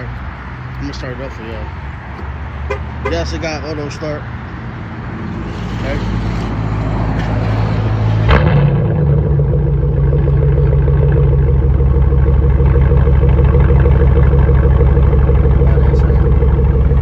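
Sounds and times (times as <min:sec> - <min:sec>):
car engine starting and idling: 0:07.0 - 0:17.0.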